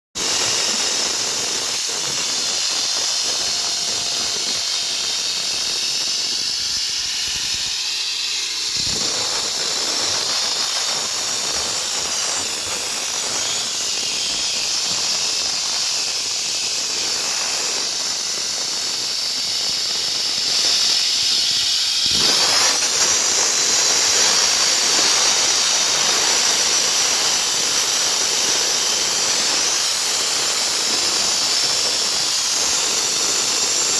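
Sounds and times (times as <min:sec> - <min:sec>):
concrete saw whining and grinding: 0:00.2 - 0:33.9.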